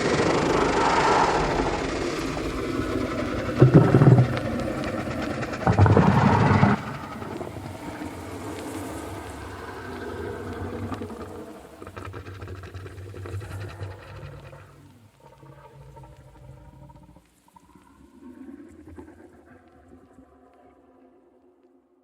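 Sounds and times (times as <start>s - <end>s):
low rumbling: 0.0s - 11.4s.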